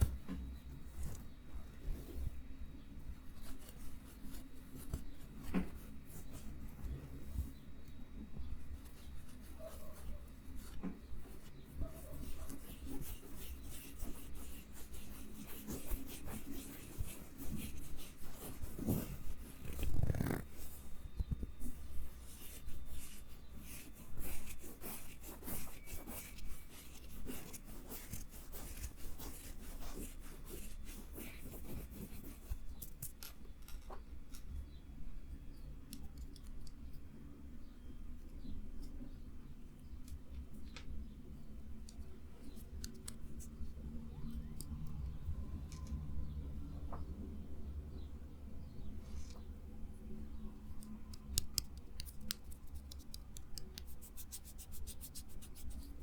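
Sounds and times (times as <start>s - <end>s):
close scratching and rubbing: 8.6s - 33.5s, 50.6s - 56.0s.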